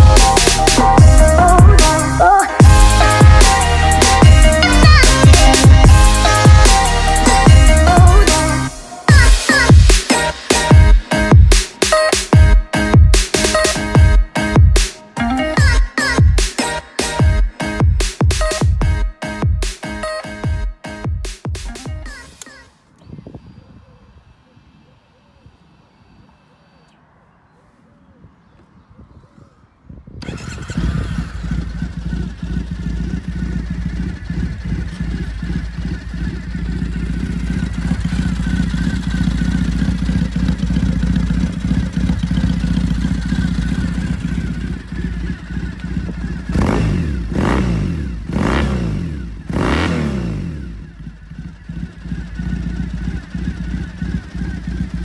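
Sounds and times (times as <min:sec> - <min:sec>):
motorcycle engine idling: 0:00.0 - 0:14.8, 0:30.2 - 0:55.0
motorcycle engine revving: 0:00.0 - 0:14.9, 0:30.2 - 0:55.0
motorcycle engine starting: 0:00.0 - 0:19.0, 0:30.2 - 0:55.0.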